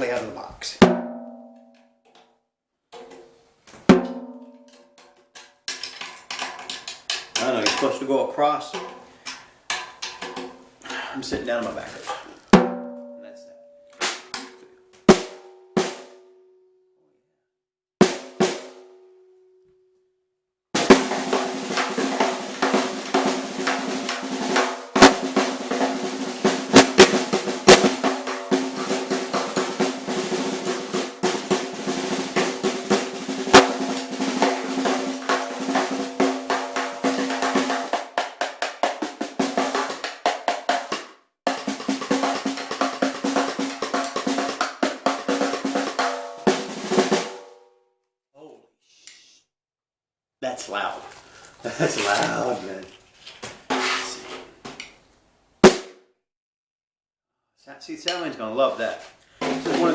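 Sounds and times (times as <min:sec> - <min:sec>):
snare drum hits and rolls: 0:00.0 - 0:01.6, 0:03.8 - 0:04.7, 0:20.8 - 0:47.5, 0:55.6 - 0:56.0, 0:59.4 - 0:59.9.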